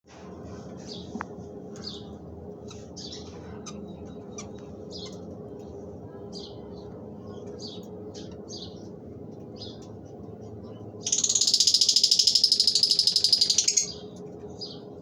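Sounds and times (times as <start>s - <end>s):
steady low hum: 0.1s - 15.0s
lovebirds squawking and chirping: 2.7s - 5.2s, 11.1s - 14.8s.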